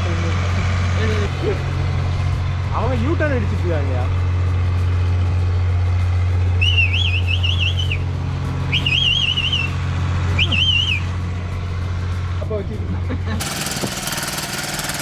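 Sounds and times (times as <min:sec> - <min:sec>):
boat engine droning: 0:00.0 - 0:15.0
warbling whistle-like tones: 0:05.3 - 0:12.3.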